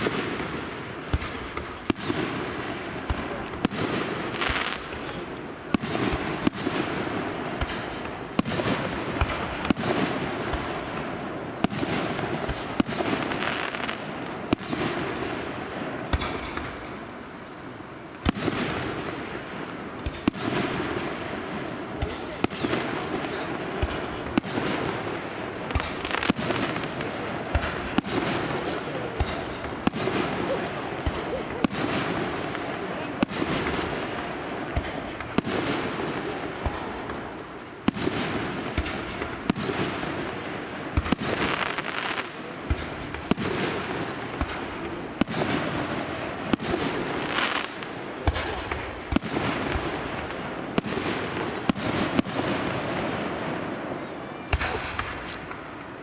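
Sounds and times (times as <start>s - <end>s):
fireworks bursting with bangs: 0.0s - 56.0s.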